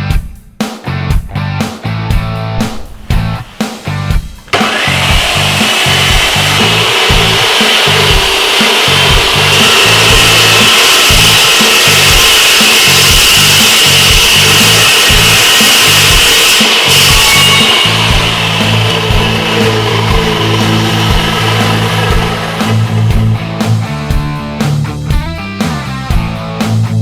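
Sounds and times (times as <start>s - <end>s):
music with a beat: 0.0s - 27.0s
cut-off saw cutting metal: 2.7s - 24.3s.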